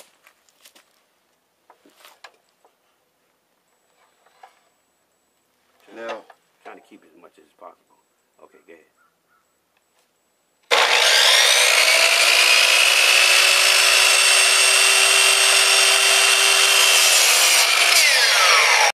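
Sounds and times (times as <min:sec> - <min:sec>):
electric saw cutting wood: 0:10.7 - 0:19.0.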